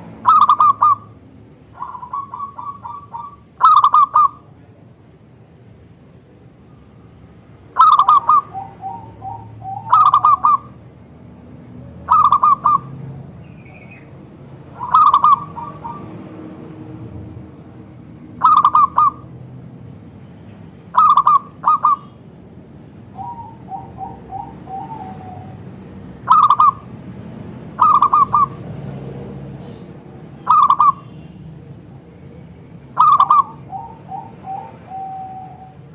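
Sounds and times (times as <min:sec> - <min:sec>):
dove cooing: 0:00.0 - 0:01.2, 0:01.8 - 0:04.4, 0:07.8 - 0:10.8, 0:12.0 - 0:13.1, 0:14.7 - 0:16.4, 0:18.4 - 0:19.3, 0:20.9 - 0:22.2, 0:23.1 - 0:27.0, 0:27.6 - 0:28.6, 0:30.4 - 0:31.1, 0:33.0 - 0:35.9.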